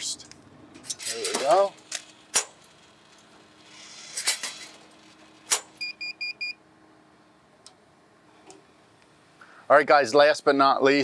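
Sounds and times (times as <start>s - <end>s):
vending machine beeping: 0.8s - 6.6s.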